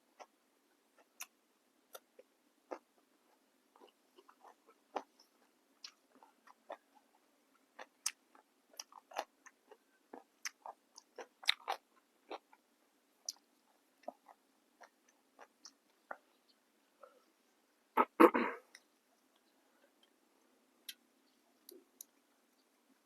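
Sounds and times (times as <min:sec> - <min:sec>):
person chewing crunchy vegetables: 0:01.9 - 0:12.6, 0:13.2 - 0:16.3.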